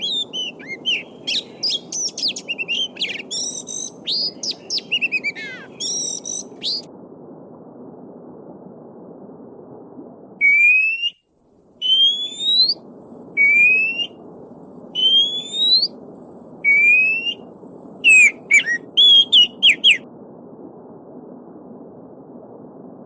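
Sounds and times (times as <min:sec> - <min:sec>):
stream rushing: 0:00.0 - 0:03.4
songbird whistling: 0:00.0 - 0:06.9, 0:11.8 - 0:12.8, 0:15.0 - 0:15.9, 0:16.7 - 0:17.4, 0:18.0 - 0:20.0.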